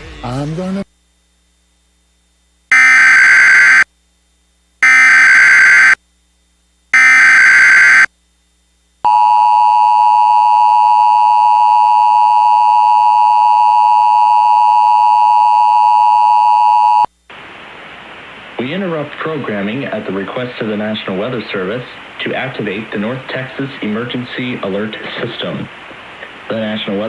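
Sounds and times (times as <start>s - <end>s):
data burst tones: 2.7s - 3.8s, 4.8s - 6.0s, 7.0s - 8.1s
two-tone attention signal: 2.7s - 3.8s, 4.8s - 6.0s, 7.0s - 8.1s.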